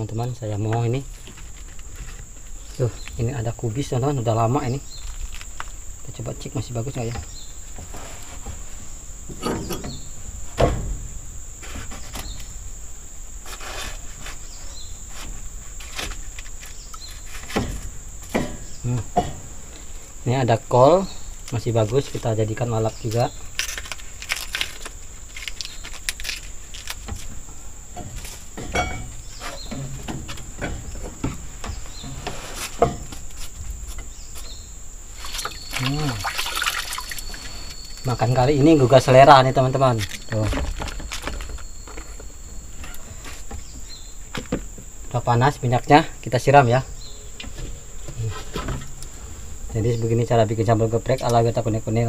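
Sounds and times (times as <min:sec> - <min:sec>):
insect drone with chirps: 0:00.0 - 0:52.0
thump: 0:09.3 - 0:12.0, 0:28.0 - 0:29.1
cabbage leaves rustling: 0:21.5 - 0:28.5, 0:35.1 - 0:42.1
snaps and crackles: 0:23.0 - 0:27.4.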